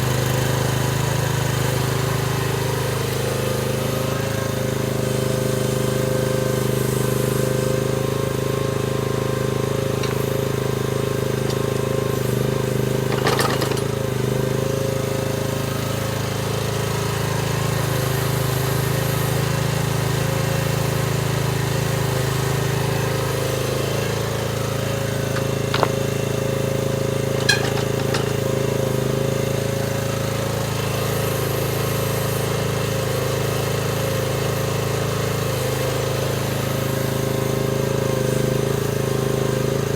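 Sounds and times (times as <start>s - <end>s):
excavator engine running: 9.1s - 14.8s, 23.3s - 29.2s
sharp metal clanks: 10.0s - 14.0s, 25.3s - 26.2s, 27.3s - 28.6s.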